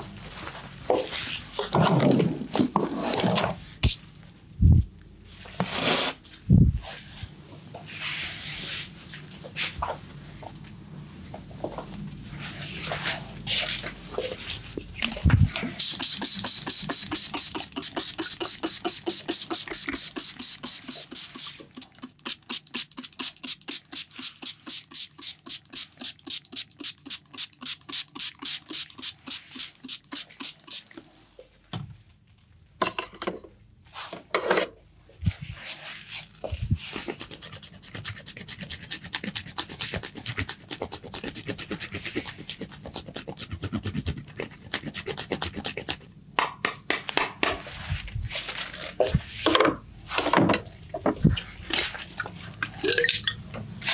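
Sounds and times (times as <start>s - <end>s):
hands rubbing skin: 15.8s - 31.0s.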